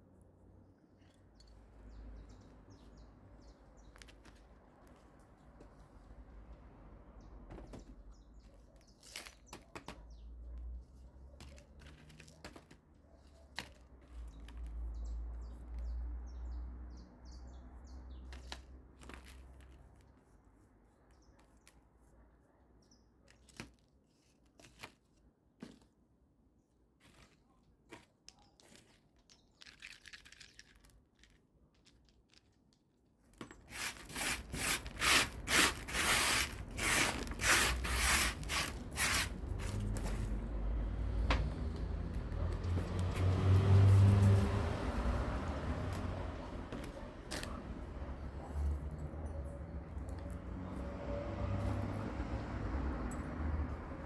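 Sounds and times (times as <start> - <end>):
quick rhythmic scraping strokes: 33.7 - 39.9.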